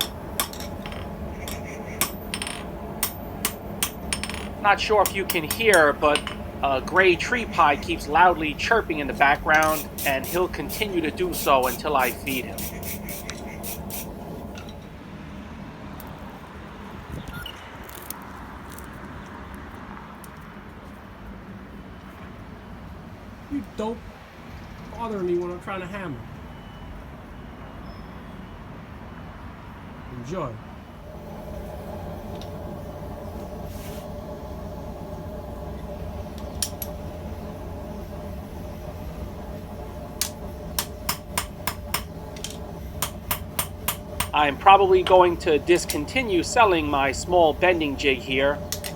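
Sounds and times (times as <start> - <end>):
hammer striking steel on anvil: 0.0 - 7.7, 9.4 - 13.3, 40.2 - 45.2
steady low hum: 0.0 - 15.1, 30.9 - 48.9
steady background noise: 0.0 - 48.9
faint bird chirp: 27.7 - 28.5.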